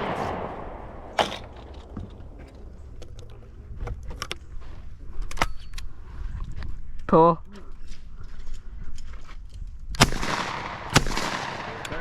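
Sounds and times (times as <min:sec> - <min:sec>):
low steady rumble: 0:00.0 - 0:05.2
shotgun clicks and rattles: 0:01.2 - 0:04.5.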